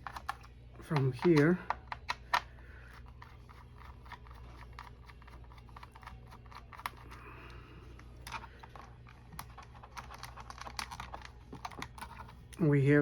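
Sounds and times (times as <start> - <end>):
screwdriver and metal parts clicking: 0.0 - 7.2, 8.0 - 12.4
steady low hum: 0.0 - 13.0.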